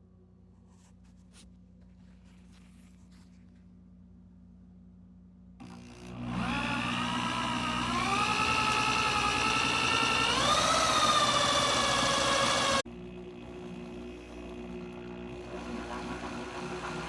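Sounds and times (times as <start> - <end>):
electric drill whining: 5.6 - 12.8, 13.6 - 17.0.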